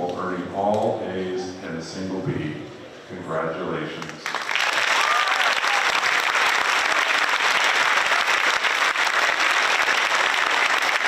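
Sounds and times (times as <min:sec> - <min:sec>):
large audience applauding: 0:04.2 - 0:11.0.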